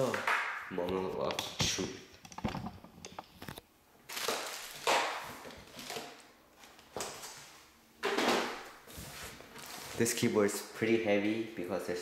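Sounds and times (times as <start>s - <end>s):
packaging rustling and scraping: 8.8s - 10.2s.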